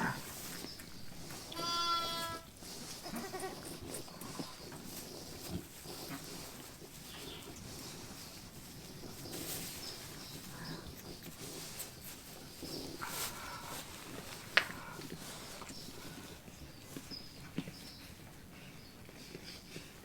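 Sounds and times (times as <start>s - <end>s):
faint shuffling: 0.0s - 20.0s
sheep bleating: 1.5s - 3.8s.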